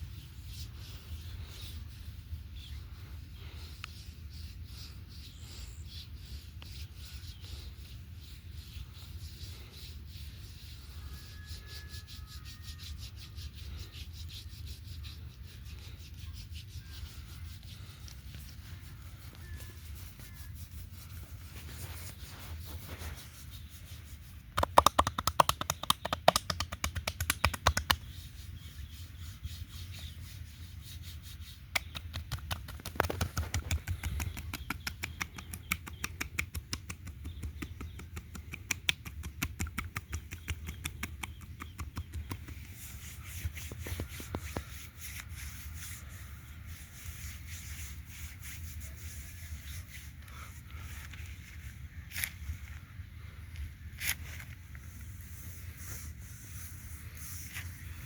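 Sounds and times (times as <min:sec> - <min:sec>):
hands rubbing oiled skin: 0:12.1 - 0:51.0.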